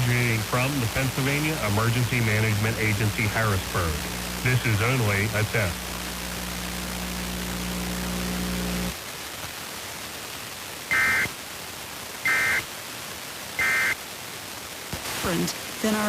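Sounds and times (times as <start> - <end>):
low steady hum: 0.0 - 9.0
digital data tone bursts: 10.9 - 11.3, 12.2 - 12.6, 13.6 - 14.0.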